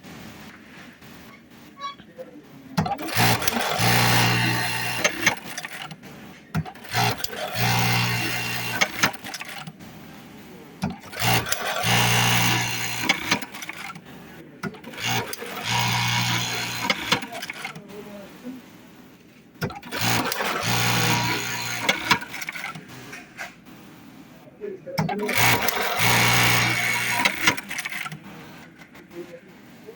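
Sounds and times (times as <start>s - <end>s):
sewing machine stitching: 2.8s - 9.8s, 10.8s - 18.0s, 19.6s - 23.6s, 25.0s - 29.2s.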